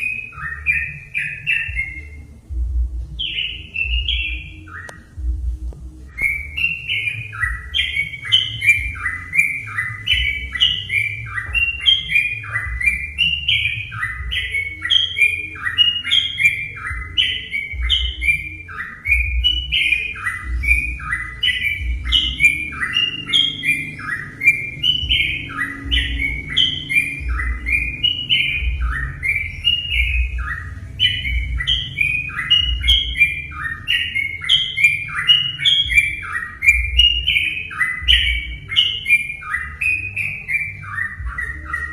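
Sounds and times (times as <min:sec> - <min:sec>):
bird singing bubbly chatter: 0:00.0 - 0:05.4, 0:06.1 - 0:41.9.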